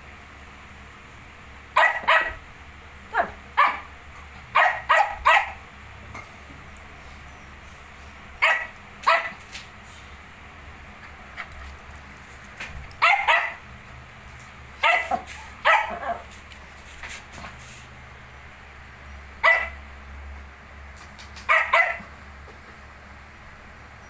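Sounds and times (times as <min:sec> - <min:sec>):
small dog yapping: 0:01.8 - 0:02.4, 0:03.1 - 0:03.9, 0:04.5 - 0:05.6, 0:08.4 - 0:09.4, 0:13.0 - 0:13.6, 0:14.8 - 0:16.4, 0:19.4 - 0:19.8, 0:21.4 - 0:22.1.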